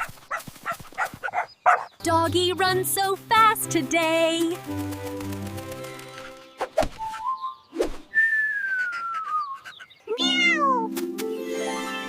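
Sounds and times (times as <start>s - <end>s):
backing music: 2.0s - 6.6s
quick swishes: 7.7s - 8.1s
whistled note sliding downward: 8.1s - 9.3s
cartoon cat meow: 10.1s - 10.9s.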